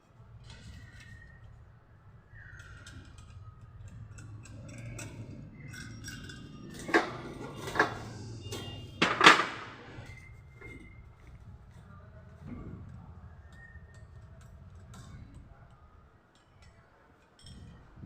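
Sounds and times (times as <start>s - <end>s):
metal clinking and clanking: 2.3s - 11.9s
sharp ringing metal clanks: 2.4s - 11.0s.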